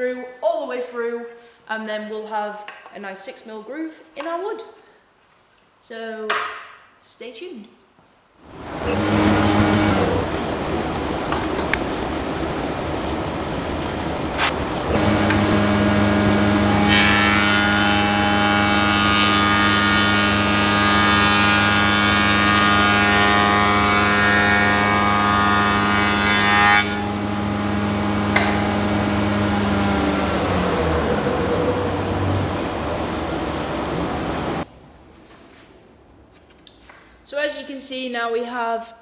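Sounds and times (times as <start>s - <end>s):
spindle moulder humming: 8.5s - 34.6s
cutter cutting wood: 8.6s - 34.6s.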